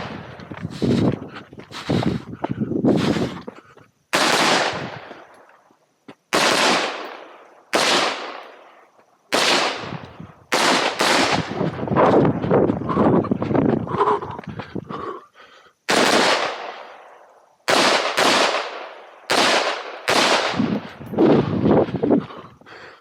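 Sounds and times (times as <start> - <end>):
rifle shots with echo: 4.1 - 5.3, 6.3 - 8.6, 9.3 - 11.6, 15.9 - 17.1, 17.7 - 21.5.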